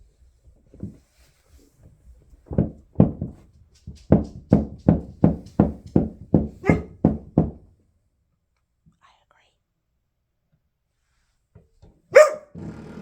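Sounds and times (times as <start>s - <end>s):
hammering on subfloor: 2.5s - 7.6s.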